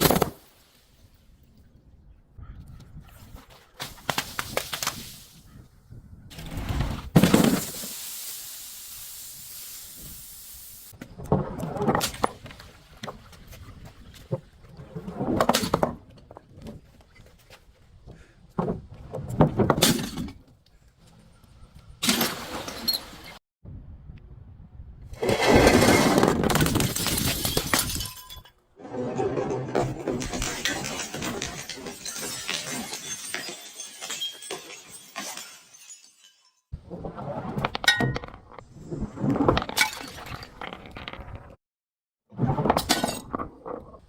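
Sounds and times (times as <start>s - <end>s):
steady hiss: 7.7s - 10.9s
objects crushing and cracking: 25.3s - 36.5s.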